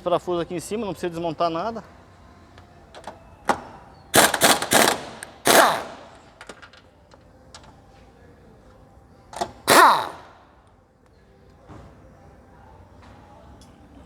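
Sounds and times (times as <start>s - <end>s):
impact wrench hammering: 3.5s - 6.6s, 9.4s - 10.3s.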